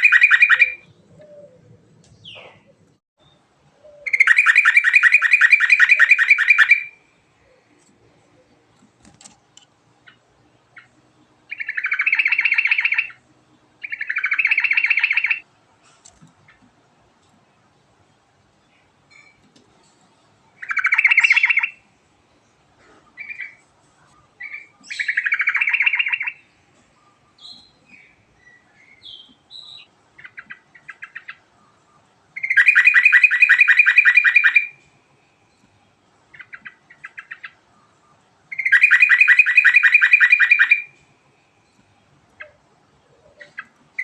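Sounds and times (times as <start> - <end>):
bird trilled song: 0.0 - 7.0, 10.8 - 13.2, 13.8 - 15.4, 20.6 - 21.8, 24.4 - 41.0
soft bird chirps: 18.6 - 44.0.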